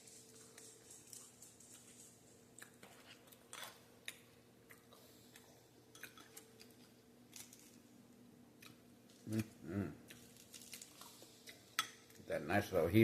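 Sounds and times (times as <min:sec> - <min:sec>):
chewing food with crunches: 0:00.0 - 0:07.9, 0:08.5 - 0:12.3
faint steady hum: 0:00.0 - 0:13.0.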